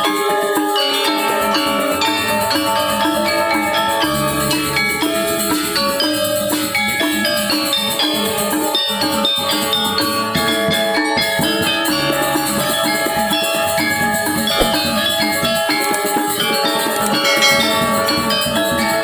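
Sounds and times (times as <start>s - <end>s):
drums: 12.7s - 16.6s.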